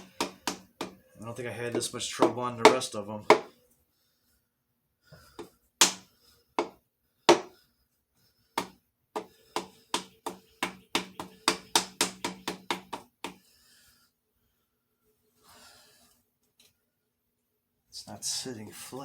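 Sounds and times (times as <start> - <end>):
hammer tapping on metal: 0.0 - 1.0, 1.7 - 3.5, 6.6 - 7.5, 8.6 - 13.4.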